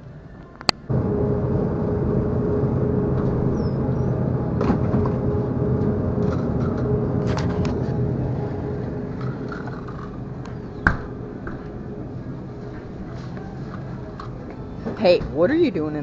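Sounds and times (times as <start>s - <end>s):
low hum: 0.0s - 15.9s
constant mid-pitched tone: 0.0s - 16.0s
loud steady mechanical noise: 0.0s - 16.0s.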